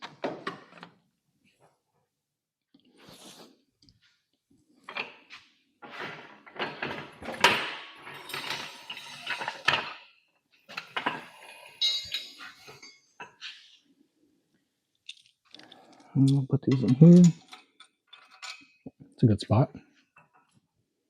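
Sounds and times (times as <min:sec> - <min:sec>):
metal bolts and tools clinking: 0:06.4 - 0:13.6, 0:16.3 - 0:18.8.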